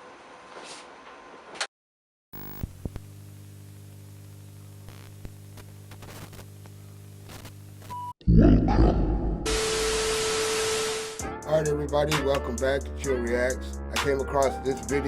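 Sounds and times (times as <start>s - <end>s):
electrical mains hum: 2.4s - 8.1s.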